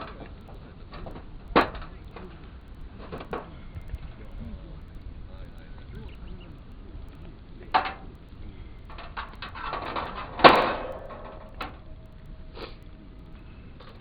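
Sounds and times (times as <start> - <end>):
handling knocks and clatter: 0.0 - 4.2, 7.6 - 8.2, 8.8 - 12.2
small clicks: 0.0 - 14.0
loud ringing clank: 5.9 - 14.0.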